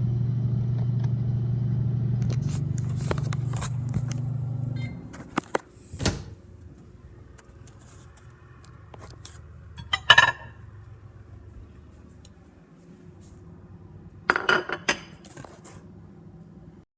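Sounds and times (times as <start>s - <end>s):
microwave oven humming: 0.0s - 16.8s
dishes clinking: 9.8s - 10.6s, 14.3s - 15.2s.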